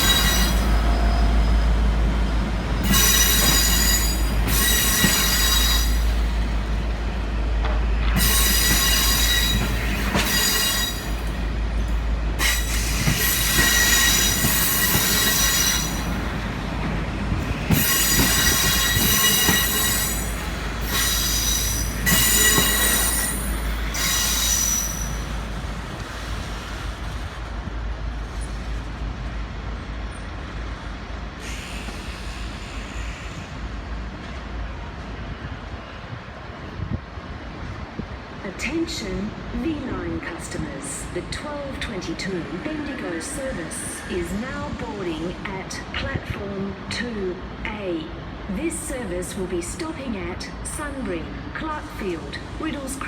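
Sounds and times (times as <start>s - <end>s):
train wheels squealing: 0.0s - 6.4s, 8.1s - 16.6s, 17.5s - 25.4s, 31.4s - 33.8s
train low rumble: 0.0s - 53.0s.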